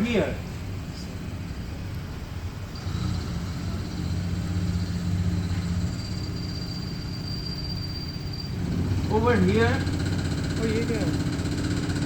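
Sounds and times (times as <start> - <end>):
milling machine hum: 2.5 - 12.0
high-pitched whine: 2.8 - 10.0.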